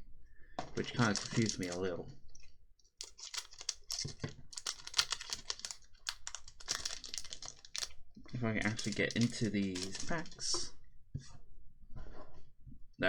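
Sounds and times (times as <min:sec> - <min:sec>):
foil wrapper crinkling: 0:00.8 - 0:01.9, 0:03.0 - 0:10.7.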